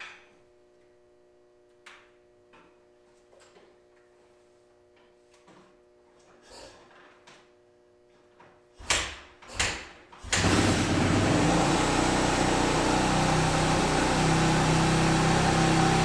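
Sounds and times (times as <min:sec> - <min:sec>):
motorcycle engine kickstarting: 0:10.2 - 0:16.0
motorcycle engine running: 0:10.4 - 0:16.0.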